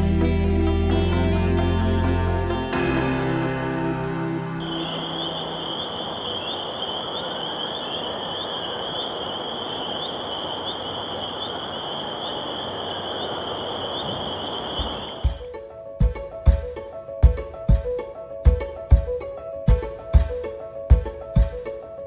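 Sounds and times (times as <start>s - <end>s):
spring peepers calling: 4.6s - 15.4s
constant hiss: 4.6s - 21.8s.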